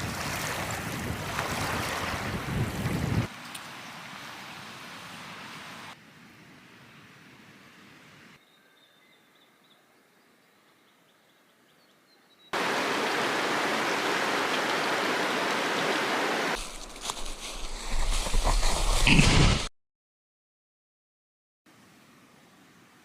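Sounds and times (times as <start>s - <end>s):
river water rushing: 12.6s - 16.6s.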